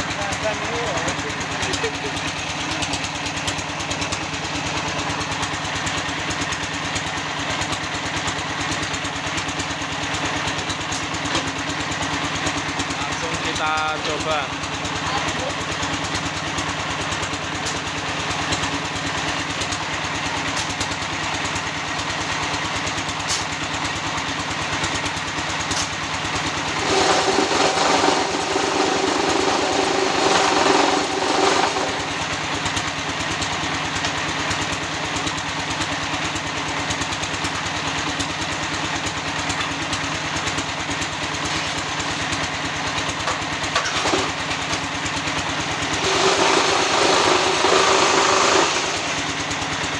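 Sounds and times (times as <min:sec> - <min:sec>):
block press machine drone: 0:26.6 - 0:32.7, 0:45.7 - 0:49.4.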